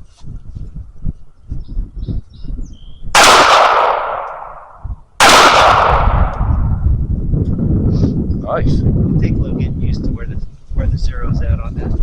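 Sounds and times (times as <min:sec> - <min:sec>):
pistol shots with echo: 0:03.2 - 0:06.4.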